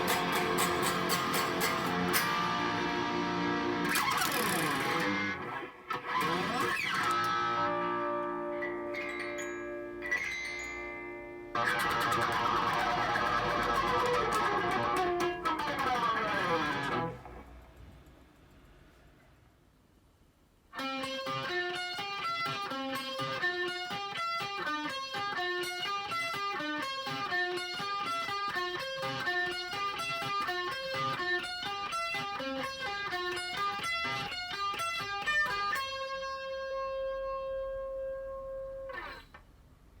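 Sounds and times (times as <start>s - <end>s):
electric guitar lead: 0.0s - 17.4s, 20.8s - 39.4s.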